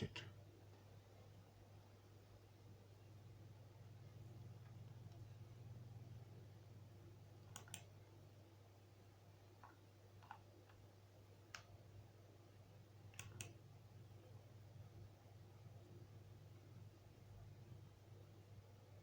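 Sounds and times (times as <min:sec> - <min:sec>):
low steady hum: 0:00.0 - 0:19.0
faint short clicks: 0:07.5 - 0:07.9.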